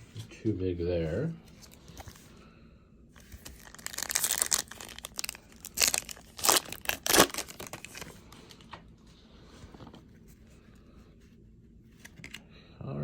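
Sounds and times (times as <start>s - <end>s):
wrapper crinkling and tearing: 3.2s - 8.6s.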